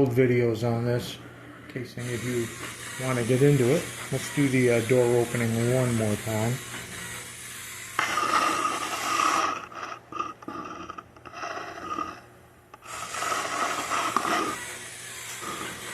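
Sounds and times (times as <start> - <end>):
small motorized door mechanism: 2.0 - 12.2, 12.8 - 15.9.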